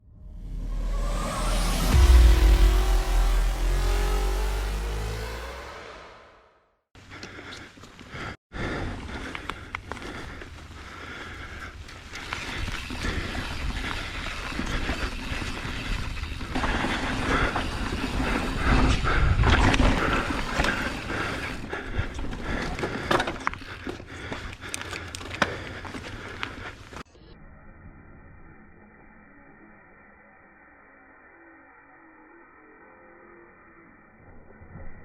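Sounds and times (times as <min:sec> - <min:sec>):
bike tyre noise: 0:07.0 - 0:27.1
bike clicks and rattles: 0:08.8 - 0:27.0.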